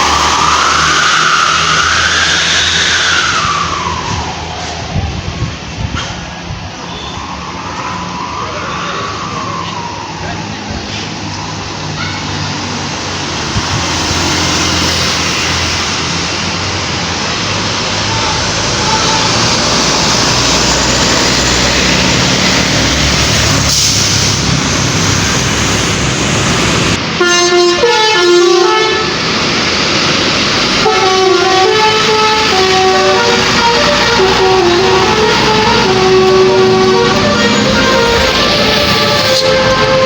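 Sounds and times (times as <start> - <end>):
vehicle engine hum: 0.0 - 27.2, 28.6 - 40.0
musical bus horn tune: 27.2 - 29.3, 30.7 - 40.0.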